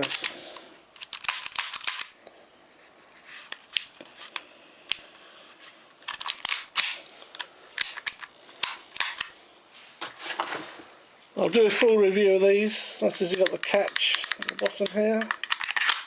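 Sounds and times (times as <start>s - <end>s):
airsoft pistol clicks and clacks: 1.0s - 2.2s, 13.2s - 16.0s.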